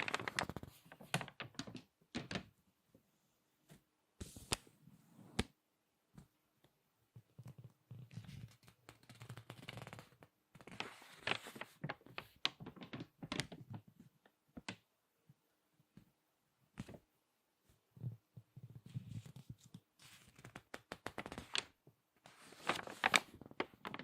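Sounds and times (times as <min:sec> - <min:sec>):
magazine pages crinkling and rustling: 0:00.0 - 0:02.4, 0:08.1 - 0:13.9, 0:18.9 - 0:24.0.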